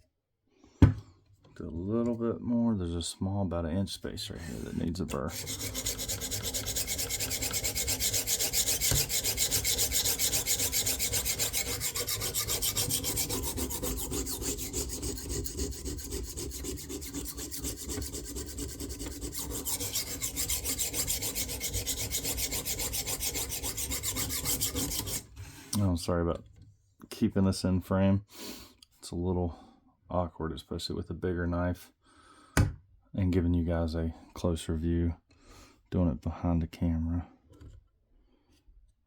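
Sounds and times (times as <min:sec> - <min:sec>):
sharpening stone rasping on knife: 0:05.1 - 0:25.2.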